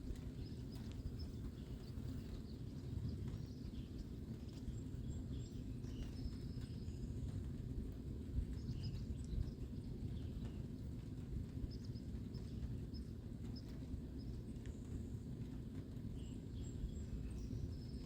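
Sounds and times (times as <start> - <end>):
wind buffeting microphone: 0.0 - 18.0
faint bird chirps: 0.2 - 7.4, 16.1 - 18.0.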